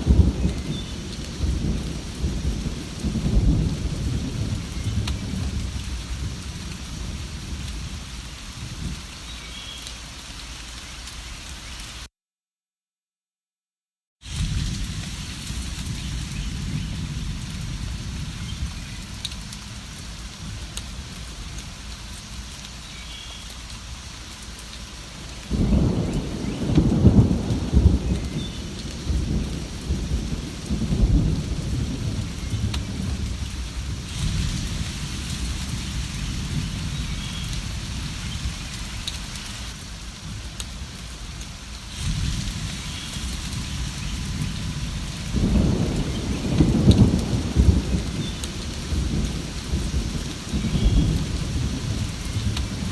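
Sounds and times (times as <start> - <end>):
rolling thunder: 0.0 - 8.0, 14.3 - 21.5, 25.5 - 39.4, 41.9 - 52.9
steady rain: 0.0 - 12.1, 14.2 - 52.9.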